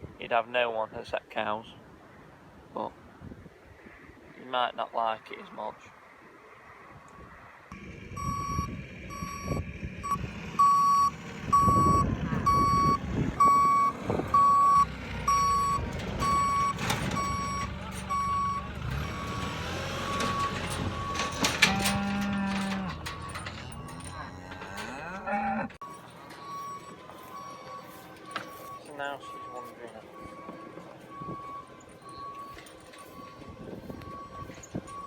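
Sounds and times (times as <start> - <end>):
vehicle engine running: 7.7 - 24.2
reversing alarm beeping: 8.1 - 24.4, 25.8 - 35.0
cow mooing: 21.5 - 25.8.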